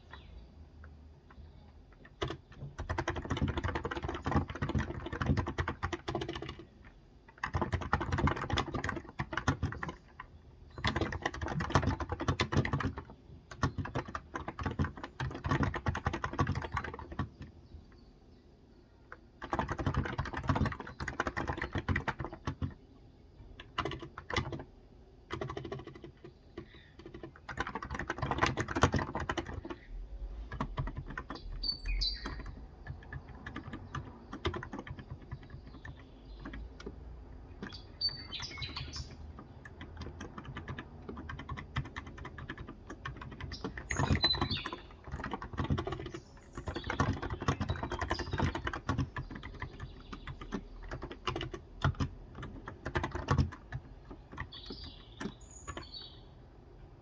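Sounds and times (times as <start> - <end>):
bird chirping: 0.0 - 5.4, 8.7 - 12.1, 15.0 - 23.5, 29.0 - 40.0, 43.2 - 51.5, 53.8 - 56.4
keyboard typing: 0.8 - 17.7, 19.1 - 56.2.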